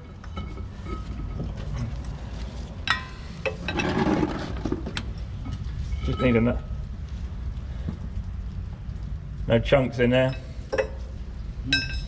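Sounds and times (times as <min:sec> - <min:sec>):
low background rumble: 0:00.0 - 0:12.0
metallic clink: 0:02.9 - 0:03.8, 0:11.7 - 0:12.0.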